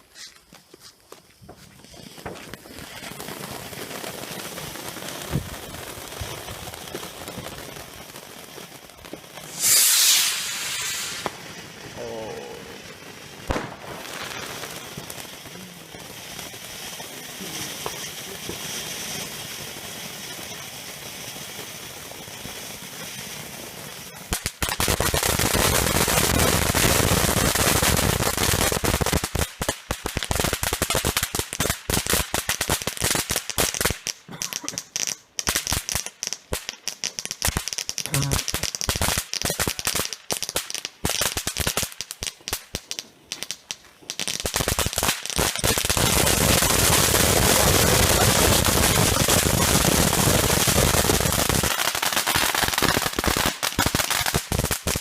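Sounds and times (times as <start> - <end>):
firecrackers banging: 9.1 - 12.8, 13.4 - 15.8, 33.4 - 41.0, 41.8 - 55.0.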